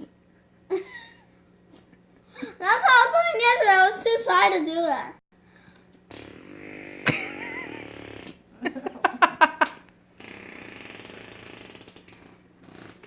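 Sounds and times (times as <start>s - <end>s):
child making fake fart sound: 6.1s - 8.4s, 10.2s - 13.0s.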